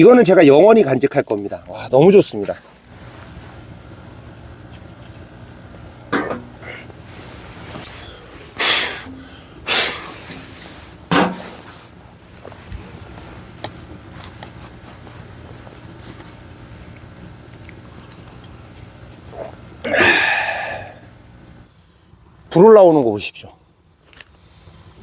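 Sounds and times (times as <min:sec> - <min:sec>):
steady low hum: 0:00.0 - 0:22.5
stove fire ticks and crackles: 0:03.5 - 0:08.0, 0:13.4 - 0:19.8.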